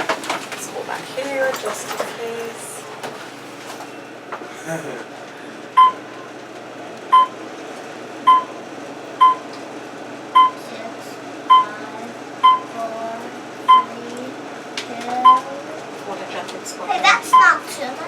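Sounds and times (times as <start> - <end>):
elevator car hum: 0.0 - 18.0
elevator beeps: 5.8 - 6.1, 7.1 - 7.4, 8.2 - 8.6, 9.2 - 9.5, 10.3 - 10.6, 11.5 - 11.8, 12.4 - 12.8, 13.6 - 14.0, 15.2 - 15.6, 17.3 - 17.6.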